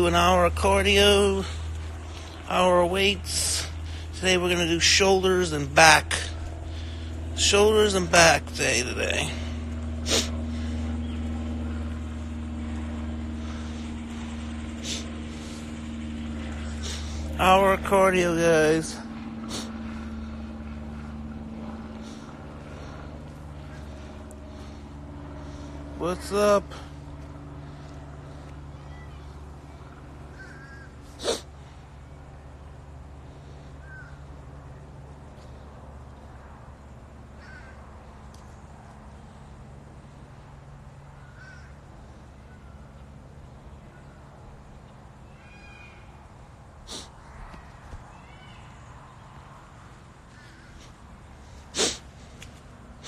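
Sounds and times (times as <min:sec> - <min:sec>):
steady low hum: 0:00.0 - 0:53.0
man snorting through nose: 0:10.0 - 0:10.4, 0:31.1 - 0:31.5, 0:46.8 - 0:47.2, 0:51.6 - 0:52.2
person sniffing: 0:10.0 - 0:10.4, 0:14.8 - 0:15.6, 0:16.8 - 0:17.2, 0:31.2 - 0:31.5, 0:46.8 - 0:47.2, 0:51.6 - 0:52.4
faint bird calls: 0:19.0 - 0:26.0, 0:26.8 - 0:36.6, 0:37.3 - 0:39.4, 0:40.1 - 0:52.4.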